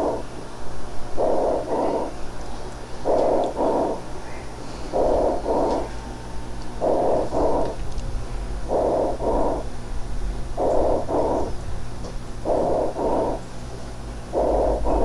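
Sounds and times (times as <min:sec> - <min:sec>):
steady low hum: 0:00.0 - 0:15.0
harsh breath sounds: 0:03.6 - 0:06.1.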